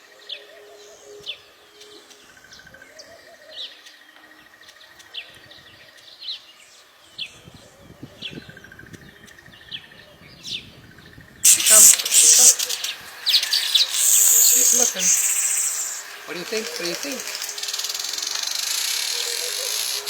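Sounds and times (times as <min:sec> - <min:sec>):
birds chirping: 0:00.2 - 0:20.0
buzzy bird trill: 0:11.4 - 0:20.0.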